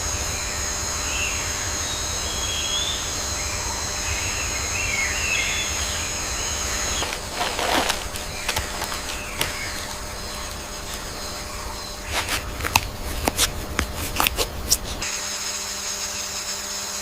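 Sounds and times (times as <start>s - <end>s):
high insect buzz: 0.1s - 17.0s
rustling: 6.4s - 15.0s.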